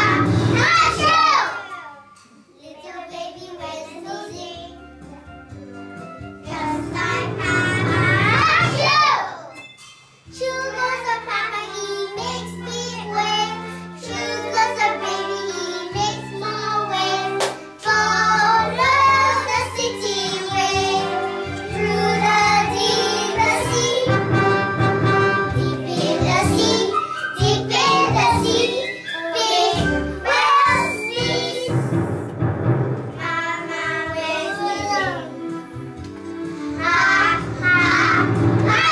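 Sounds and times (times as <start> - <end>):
child singing: 2.6 - 4.8, 10.4 - 21.2, 25.6 - 31.8, 33.2 - 35.4, 36.8 - 38.9
instrumental accompaniment: 3.3 - 38.9.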